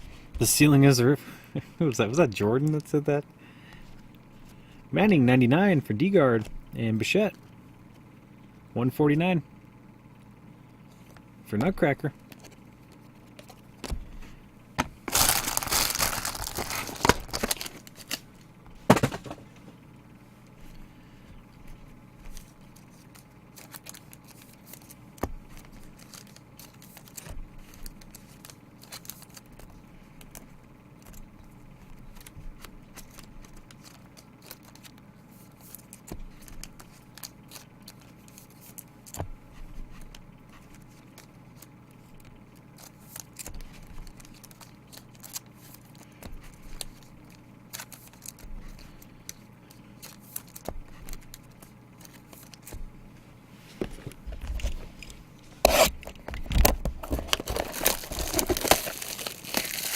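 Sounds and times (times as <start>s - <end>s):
steady low hum: 0.0s - 59.9s
plastic packaging crinkling: 15.0s - 18.3s, 42.7s - 52.8s, 55.5s - 59.9s.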